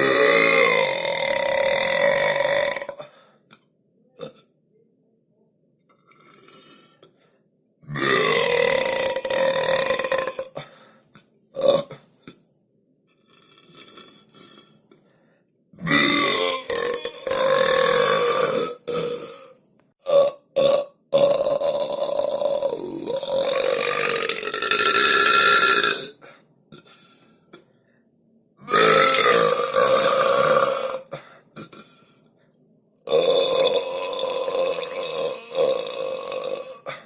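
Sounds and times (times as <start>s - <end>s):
long drawn-out belches: 0.0s - 3.0s, 7.9s - 10.6s, 15.8s - 26.2s, 28.6s - 31.9s, 33.1s - 37.0s
short burps: 28.7s - 32.0s.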